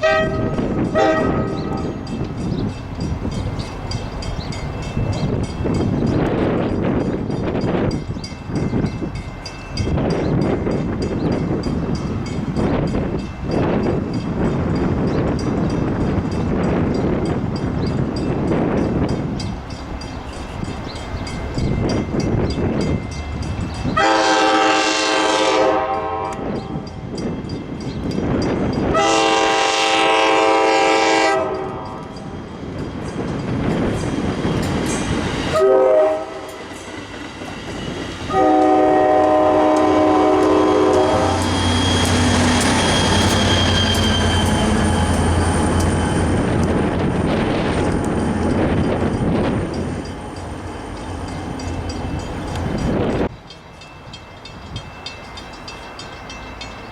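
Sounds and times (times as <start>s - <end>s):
locomotive air horn blasts: 0.0s - 1.9s, 24.0s - 26.6s, 28.9s - 32.0s, 35.5s - 36.6s, 38.3s - 41.6s
train engine rumble: 0.0s - 56.9s
train wheel noise: 0.0s - 56.9s.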